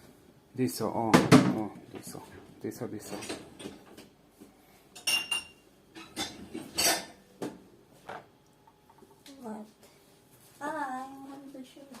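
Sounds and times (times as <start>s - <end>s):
dishware clinking and knocking: 5.0s - 7.2s.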